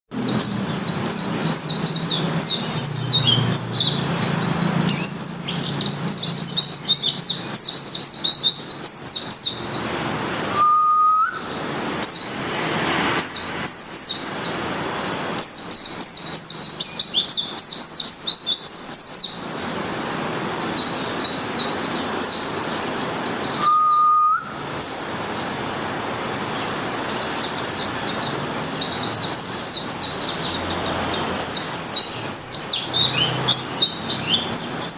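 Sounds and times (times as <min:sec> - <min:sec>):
bird twittering: 0:13.2 - 0:25.0, 0:26.4 - 0:34.9.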